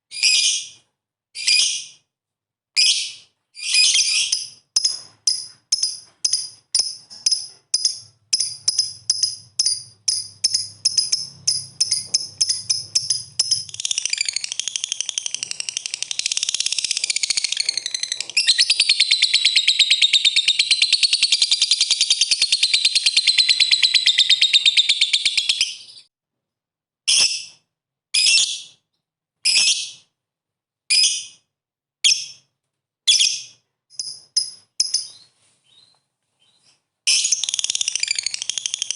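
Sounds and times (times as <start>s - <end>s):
lovebird calling: 8.4s - 26.0s.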